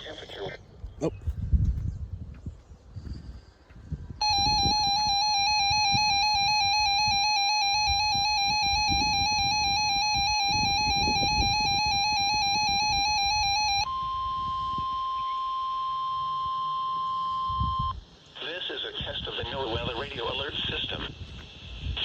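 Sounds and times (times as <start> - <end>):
electronic warbling alert tone: 4.2 - 17.9
steady single-pitch tone: 4.2 - 18.0.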